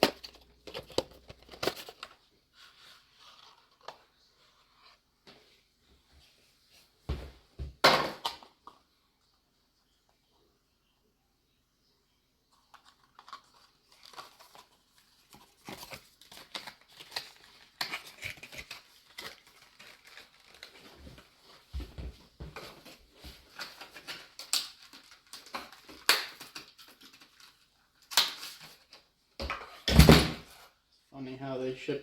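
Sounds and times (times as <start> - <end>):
packaging rustling and crinkling: 0.0 - 5.0, 12.5 - 29.0.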